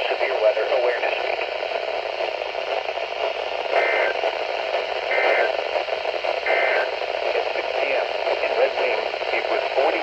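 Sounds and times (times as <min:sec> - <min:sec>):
radio static hiss: 0:00.0 - 0:10.0.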